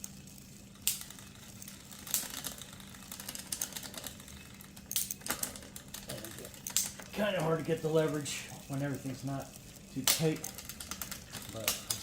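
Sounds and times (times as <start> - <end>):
bicycle chain ticking: 0.0 - 12.0.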